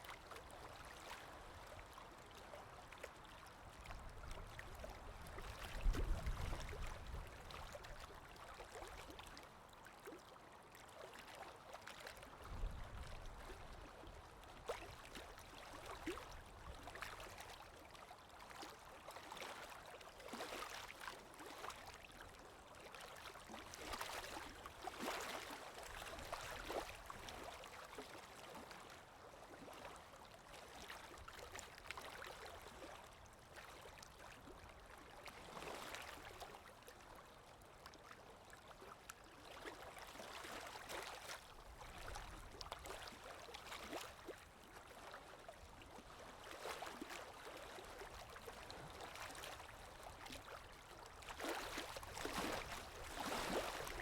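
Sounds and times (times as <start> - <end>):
lake waves splashing on shore: 51.4 - 54.0.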